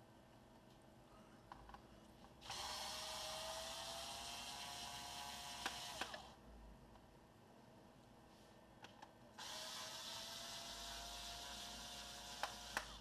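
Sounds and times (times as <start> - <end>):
electric screwdriver whining: 2.4 - 6.4, 9.4 - 13.0.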